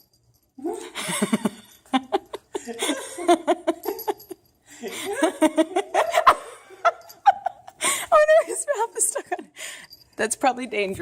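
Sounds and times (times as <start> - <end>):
person laughing: 0.6 - 8.0.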